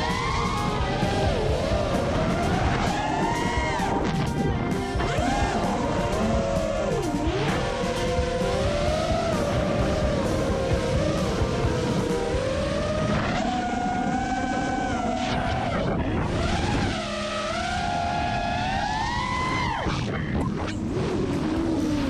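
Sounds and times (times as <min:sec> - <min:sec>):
quadcopter motors whining: 0:00.0 - 0:22.0.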